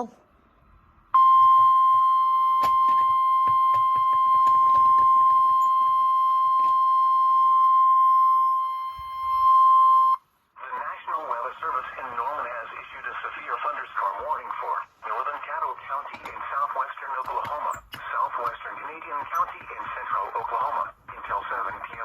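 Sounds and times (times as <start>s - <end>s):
long steady alarm beep: 1.1s - 10.2s.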